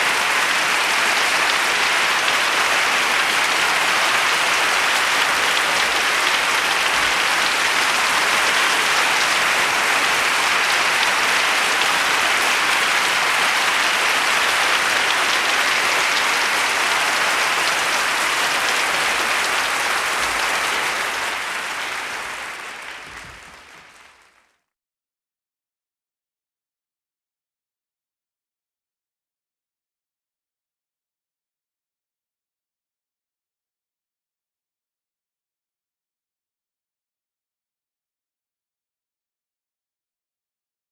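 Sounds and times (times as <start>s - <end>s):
crowd clapping: 0.0s - 24.7s.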